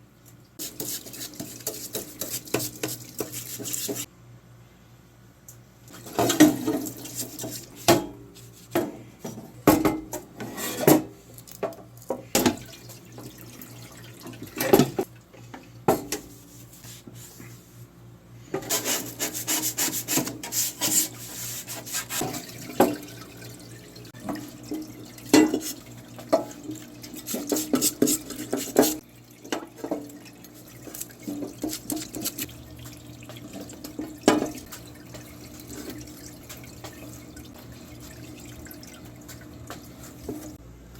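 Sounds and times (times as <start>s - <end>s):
brush scrubbing in water: 0.6s - 4.1s, 6.6s - 8.7s, 16.3s - 17.8s, 18.6s - 23.2s, 24.2s - 29.0s, 30.4s - 40.6s.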